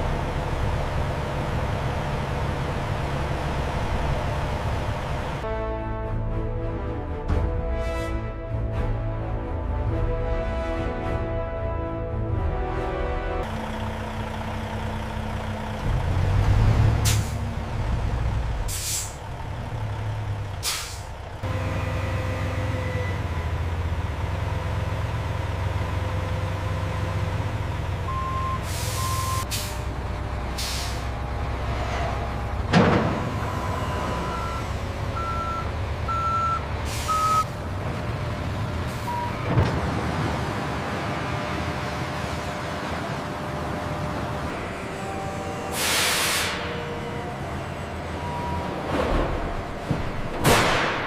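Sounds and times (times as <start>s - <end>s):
diesel engine running: 0.0s - 5.5s, 13.0s - 51.0s
reversing alarm beeping: 28.1s - 29.5s, 33.3s - 37.5s
thump: 32.7s - 33.3s
air release hisses: 45.8s - 46.6s.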